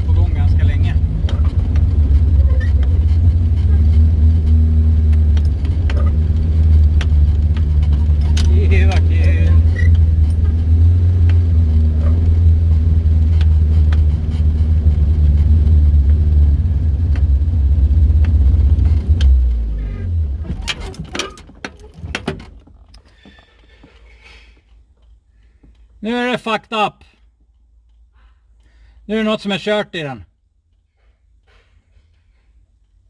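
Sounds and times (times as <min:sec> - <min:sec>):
car engine rumbling: 0:00.0 - 0:25.3.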